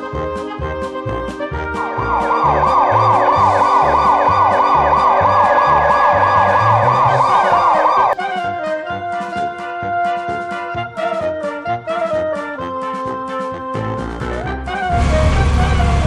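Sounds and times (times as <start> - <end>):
background music with steady beat: 0.0 - 16.0
siren yelping: 1.7 - 8.2.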